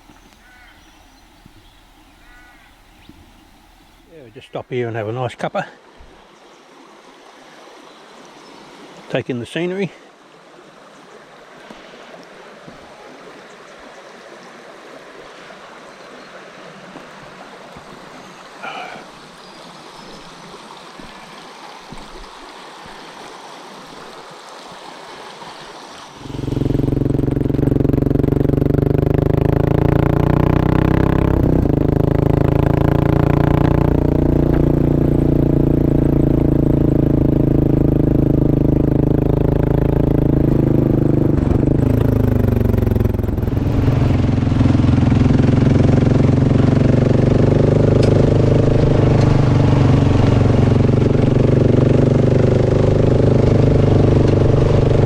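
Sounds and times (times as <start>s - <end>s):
motorcycle engine: 0.0s - 4.2s, 26.2s - 55.0s
running water: 0.0s - 55.0s.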